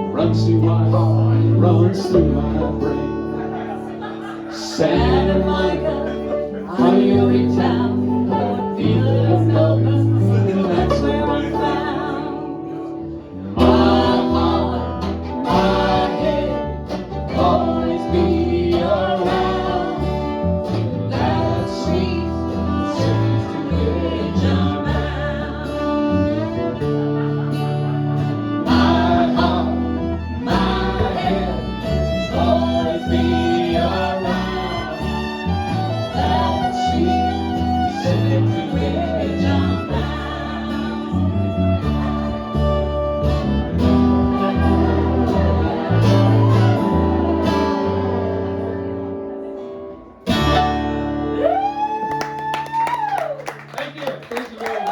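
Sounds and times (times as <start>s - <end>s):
fiddle playing melody: 0.0s - 49.2s
strummed acoustic guitar: 0.0s - 51.8s
steady bass line: 13.2s - 49.5s.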